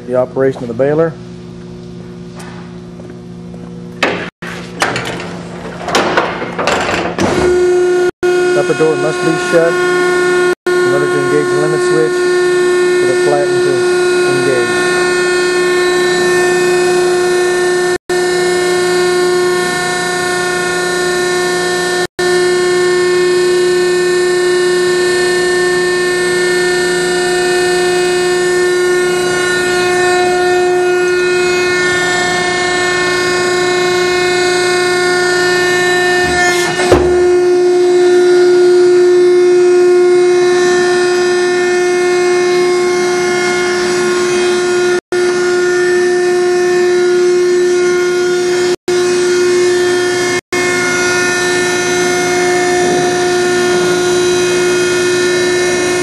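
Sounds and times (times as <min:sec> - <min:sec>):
hydraulic motor whining: 0:03.9 - 0:56.0
sharp clunk: 0:04.0 - 0:07.6.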